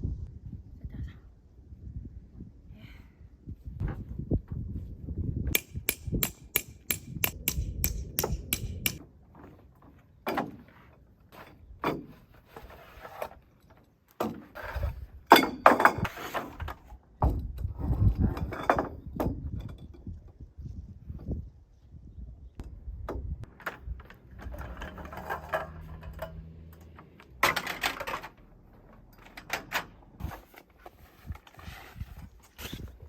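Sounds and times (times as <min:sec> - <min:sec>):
sharp hammer strikes: 0:05.6 - 0:09.0.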